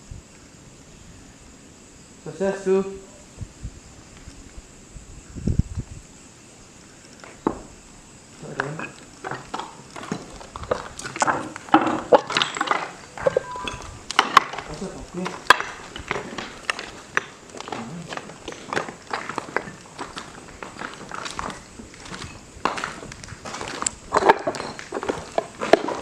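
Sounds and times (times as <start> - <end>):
footsteps with clicks and knocks: 8.6 - 26.0.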